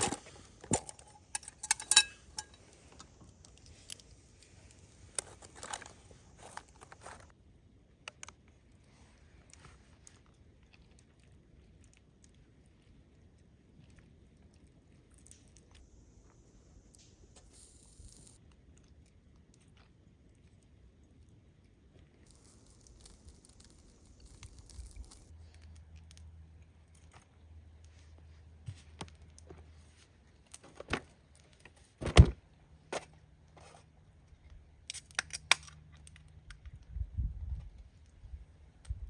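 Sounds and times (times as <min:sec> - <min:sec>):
clicks and knocks of gear: 0:00.0 - 0:04.1, 0:05.1 - 0:07.3
gear rustling: 0:00.0 - 0:07.3.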